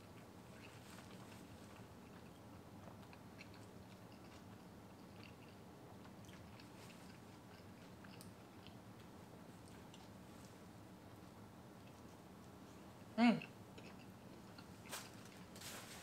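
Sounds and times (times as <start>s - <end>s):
faint chewing: 0.0s - 15.8s.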